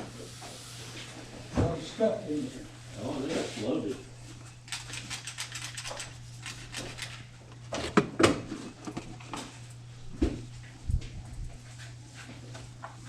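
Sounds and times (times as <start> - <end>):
steady low hum: 0.0 - 13.0
objects clicking and rattling: 4.6 - 8.0.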